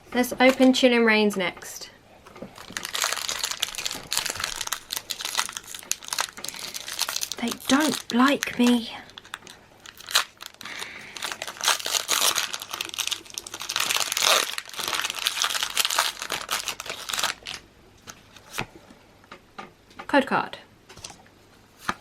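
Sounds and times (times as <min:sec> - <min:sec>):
foil wrapper crinkling: 0:02.4 - 0:18.6.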